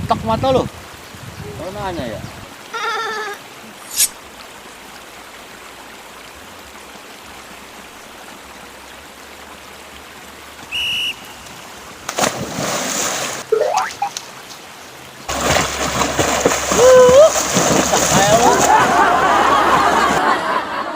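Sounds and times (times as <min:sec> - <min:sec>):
running water hiss: 0:00.0 - 0:20.0
rising whistle: 0:10.7 - 0:11.4
loud rushing splash: 0:12.1 - 0:13.4, 0:15.3 - 0:20.2.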